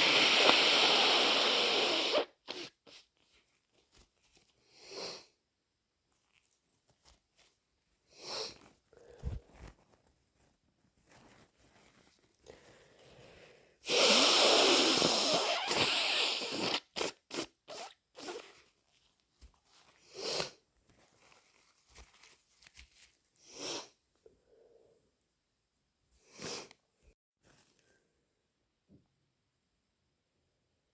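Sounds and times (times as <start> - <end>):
nasal sniffs: 0.0 - 3.1, 13.8 - 18.6, 20.0 - 20.6, 23.4 - 24.0, 26.3 - 26.8
person blowing nose: 0.0 - 3.2, 4.7 - 5.3, 8.1 - 9.4, 13.8 - 18.7, 20.0 - 20.6, 23.4 - 24.0, 26.3 - 26.7.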